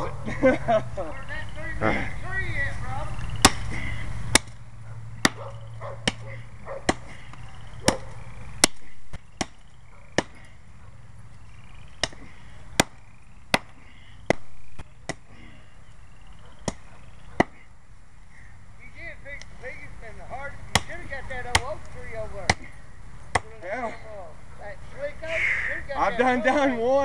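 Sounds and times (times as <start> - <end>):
tomahawk chopping into tree trunk: 3.4 - 4.6, 5.2 - 5.4, 6.0 - 10.6, 12.0 - 15.3, 16.6 - 17.6, 20.7 - 21.8, 22.4 - 22.7.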